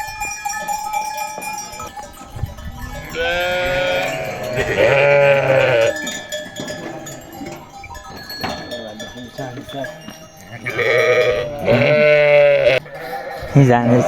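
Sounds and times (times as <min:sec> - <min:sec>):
livestock bells ringing: 0:00.0 - 0:14.0
sheep bleating: 0:03.0 - 0:06.1, 0:10.6 - 0:14.0.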